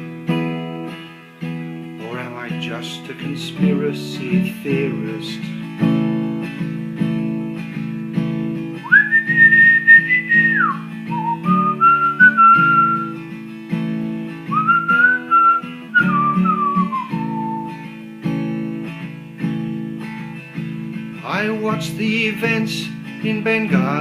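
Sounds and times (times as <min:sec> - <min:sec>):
strummed acoustic guitar: 0:00.0 - 0:24.0
whistled melody: 0:08.8 - 0:13.2, 0:14.5 - 0:17.9.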